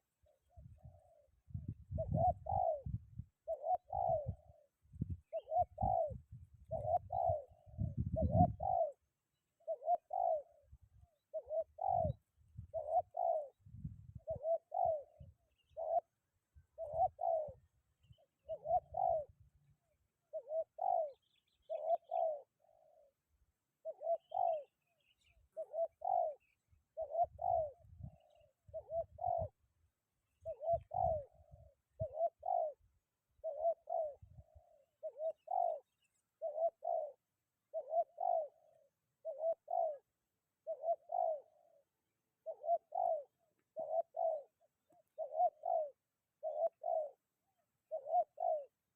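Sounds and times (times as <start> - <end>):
dove cooing: 0.0 - 48.9
wind rumbling on microphone: 0.5 - 3.3, 3.9 - 8.8, 13.6 - 14.5, 27.2 - 29.5, 30.6 - 32.2.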